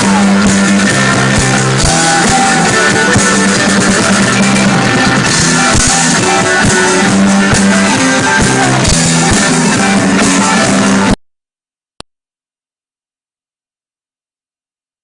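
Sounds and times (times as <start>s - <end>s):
rock band playing live: 0.0s - 11.2s.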